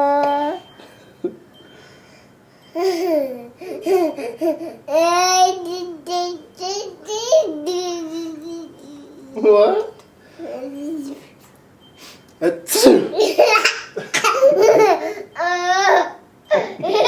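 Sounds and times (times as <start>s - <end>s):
baby babbling and laughing: 0.0s - 0.7s, 2.8s - 9.4s, 10.4s - 11.2s, 13.2s - 17.0s.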